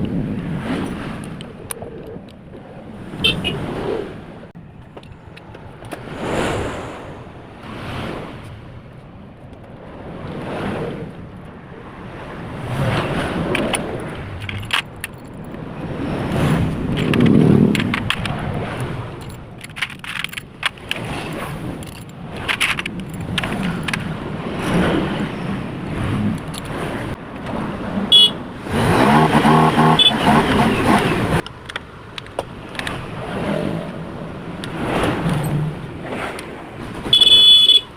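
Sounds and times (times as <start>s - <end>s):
metal tools clinking: 21.8s - 24.0s.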